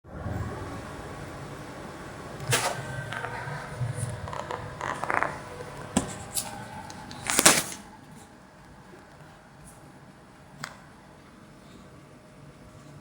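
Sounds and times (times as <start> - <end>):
short scraping: 2.4 - 7.9
objects knocking and clattering: 2.5 - 7.8.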